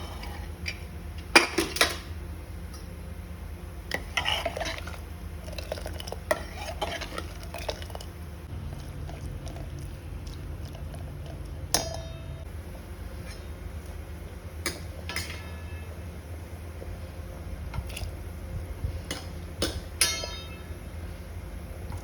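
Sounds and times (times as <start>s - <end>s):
steady low hum: 0.0s - 22.0s
metal spoon scraping pot: 3.9s - 8.0s
spoon clinking on pot: 11.7s - 12.4s.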